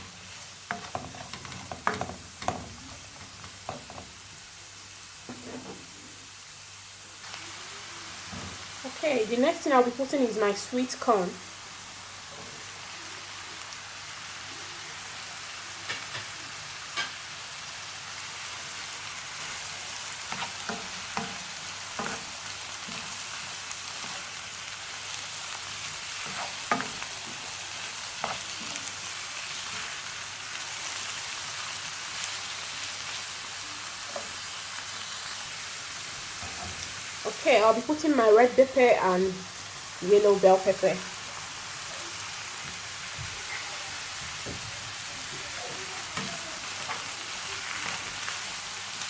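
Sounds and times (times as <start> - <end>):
vegetables sizzling in a pan: 0.0 - 49.0
spoon stirring a pan: 0.1 - 4.2, 15.8 - 17.3, 18.7 - 30.3.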